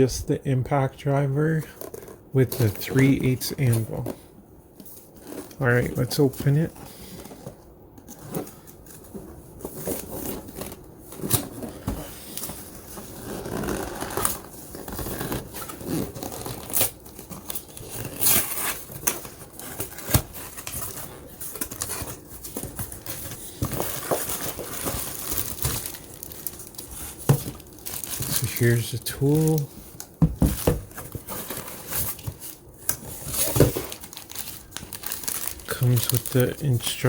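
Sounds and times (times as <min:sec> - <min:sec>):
packaging crinkling and tearing: 0:08.1 - 0:37.0.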